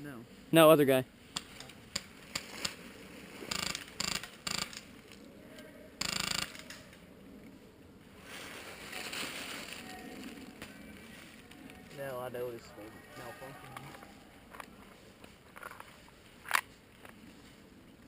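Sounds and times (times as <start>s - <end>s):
airsoft rifle firing: 3.5s - 4.8s, 6.0s - 6.9s.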